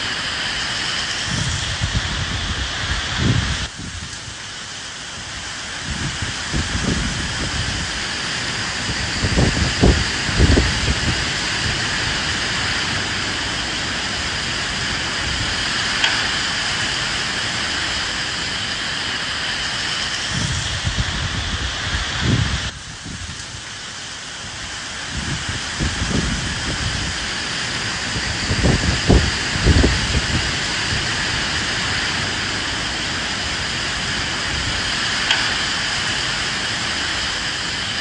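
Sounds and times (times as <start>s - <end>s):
steady rain hiss: 0.0s - 38.0s
wind gusts rumbling: 0.0s - 38.0s.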